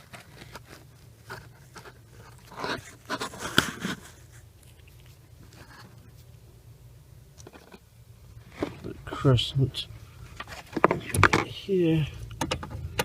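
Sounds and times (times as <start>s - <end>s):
hand tools rustling and scraping: 10.1s - 12.0s.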